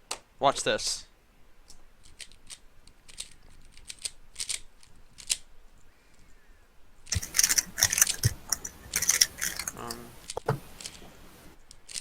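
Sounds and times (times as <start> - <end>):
puzzle cube layers clicking: 1.6 - 5.5, 7.0 - 12.0.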